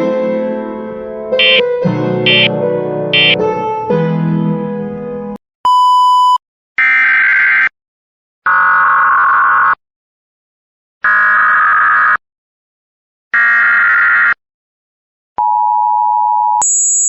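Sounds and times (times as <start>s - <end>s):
two-tone attention signal: 1.4s - 1.6s, 2.3s - 2.5s, 3.2s - 3.4s.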